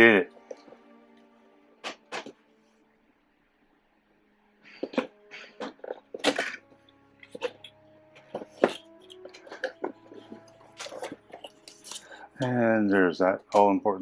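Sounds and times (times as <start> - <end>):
cardboard packaging clicks and snaps: 8.6 - 12.1.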